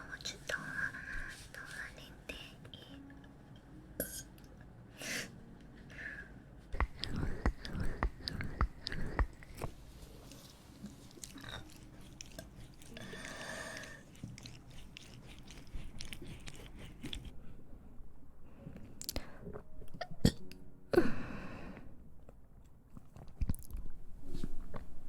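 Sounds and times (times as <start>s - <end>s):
girl chewing and biting: 6.7s - 17.4s, 22.9s - 23.9s
sharp mouth clicks: 6.8s - 9.7s.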